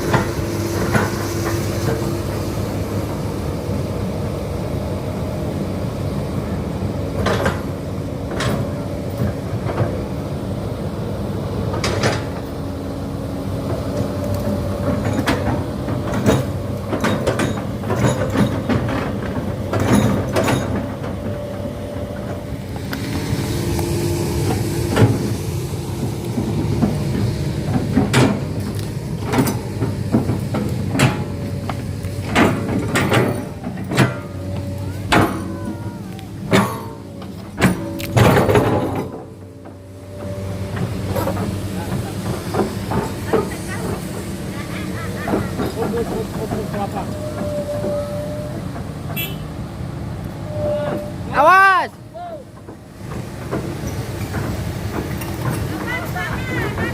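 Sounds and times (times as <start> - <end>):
excavator diesel engine running: 0.0 - 56.9
sharp metal clanks and knocks: 36.5 - 39.3.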